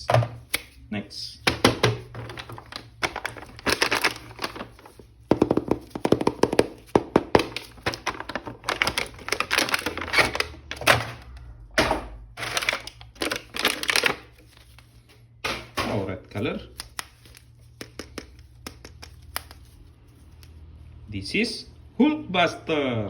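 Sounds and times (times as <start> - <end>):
plastic packaging rattling: 1.4 - 11.3, 12.3 - 14.8.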